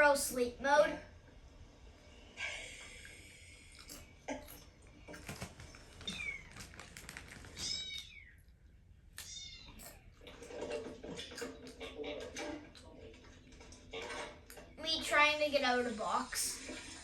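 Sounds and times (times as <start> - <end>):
cat meowing: 6.0 - 6.8, 7.5 - 8.4, 9.2 - 10.0.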